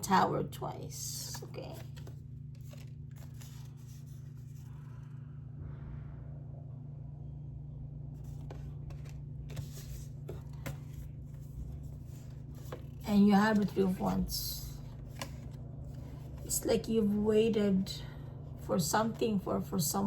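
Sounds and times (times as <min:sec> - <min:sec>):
steady low hum: 0:00.0 - 0:20.0
cards being shuffled: 0:01.1 - 0:04.8, 0:08.2 - 0:16.6.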